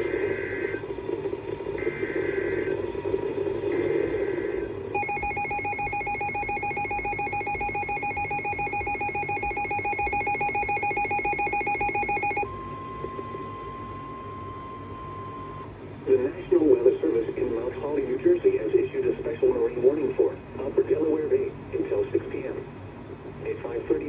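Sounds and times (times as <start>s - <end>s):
high-pitched warning tone: 5.0s - 12.8s
fluttering two-tone signal: 5.0s - 15.3s
radio static: 23.4s - 24.0s.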